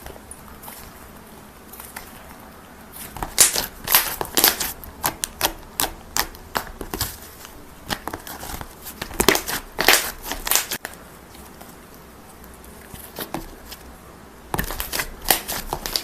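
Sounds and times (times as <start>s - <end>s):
slime clicking and popping: 3.2s - 7.1s, 9.0s - 10.8s.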